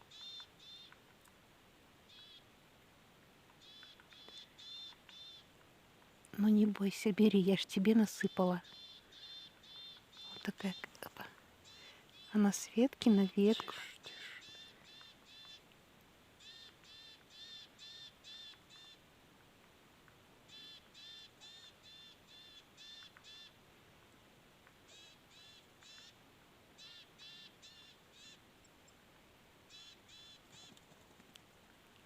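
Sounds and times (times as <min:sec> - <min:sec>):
bird call: 0:03.6 - 0:05.4, 0:13.2 - 0:15.6.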